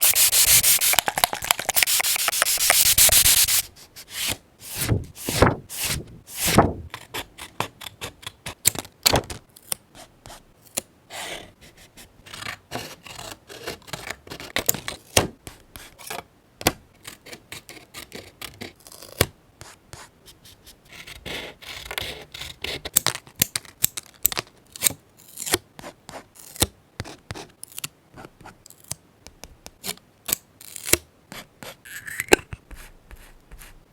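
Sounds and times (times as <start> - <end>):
paper rubbing and rustling: 0.0 - 6.9
paper scratches taps and crinkles: 0.0 - 7.0.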